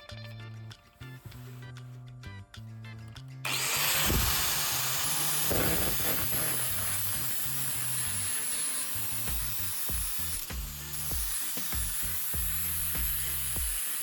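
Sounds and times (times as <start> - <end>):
background music: 0.0 - 14.0
power tool grinding metal: 3.5 - 14.0.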